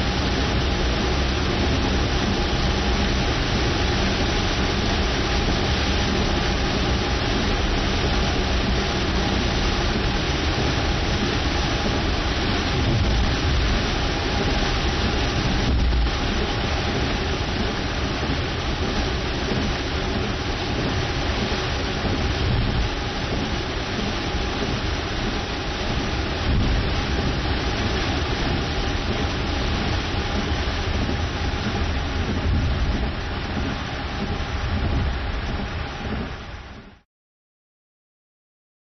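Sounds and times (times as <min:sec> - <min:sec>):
low rumbles: 0:00.0 - 0:37.0
torrential rain pouring: 0:00.0 - 0:37.0.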